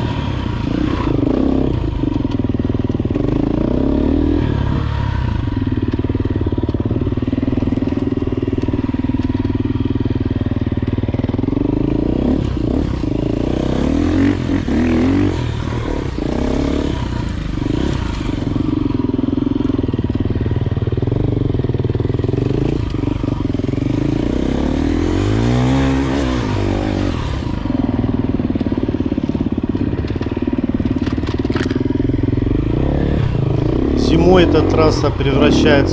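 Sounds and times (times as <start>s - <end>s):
dirt bike engine revving: 33.2s - 35.9s.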